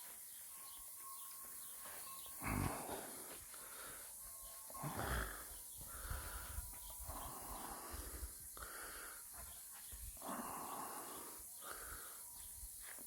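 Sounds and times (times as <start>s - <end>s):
person breathing hard: 1.8s - 13.0s.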